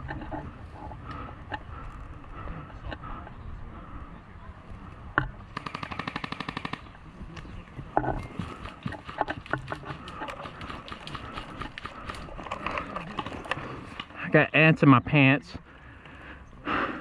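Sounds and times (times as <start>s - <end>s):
airsoft gun full-auto clicks: 5.6s - 6.9s.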